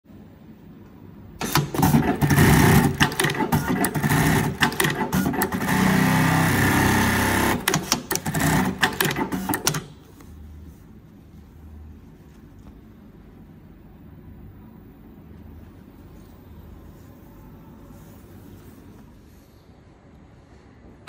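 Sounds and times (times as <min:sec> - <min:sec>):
sewing machine stitching clatter: 0:01.4 - 0:09.9.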